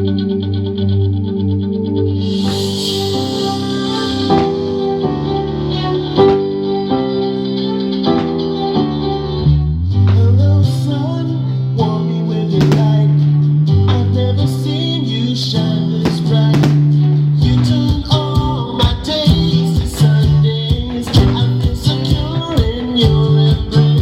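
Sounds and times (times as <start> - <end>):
bass line: 0.0 - 24.0
guitar music: 0.0 - 24.0
sharp percussive strikes: 2.4 - 5.1.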